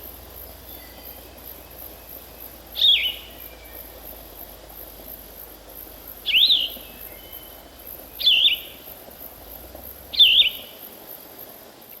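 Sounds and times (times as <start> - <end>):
faint background hiss: 0.0 - 12.0
songbird calling: 0.6 - 3.9, 6.3 - 8.9, 10.1 - 10.8.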